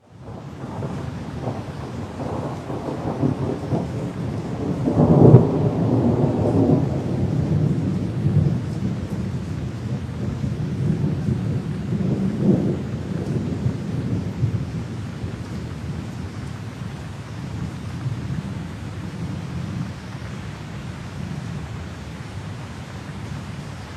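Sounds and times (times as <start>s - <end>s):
steady rain: 0.0s - 23.9s
thunder rolling: 0.2s - 16.3s.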